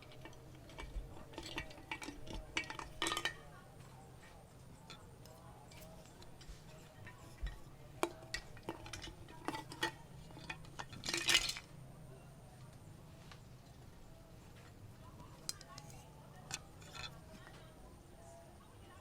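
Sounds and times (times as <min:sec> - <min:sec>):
plastic toys clicking together: 0:00.0 - 0:03.5, 0:04.8 - 0:11.7, 0:15.2 - 0:17.7
rattling scrape: 0:04.9 - 0:11.7.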